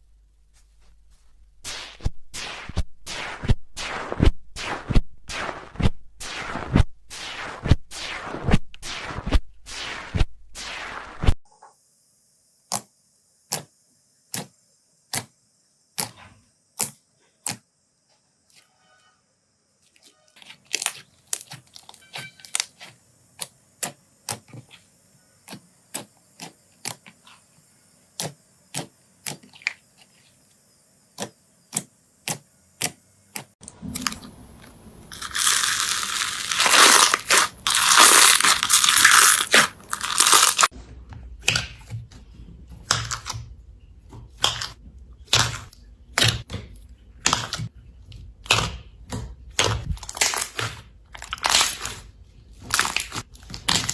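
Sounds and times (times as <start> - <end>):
slime crackling and crunching: 35.1 - 40.7, 49.6 - 53.9.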